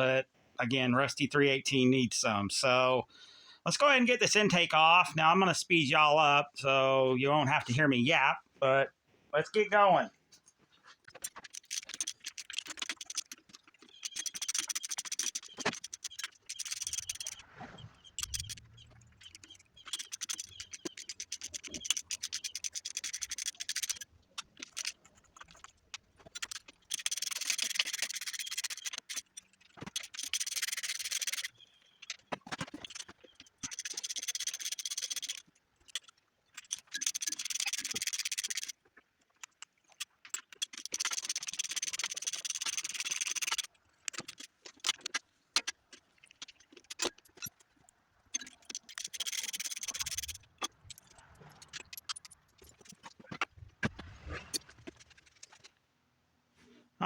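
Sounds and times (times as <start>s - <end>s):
hand tools scraping and clicking: 10.3s - 55.8s.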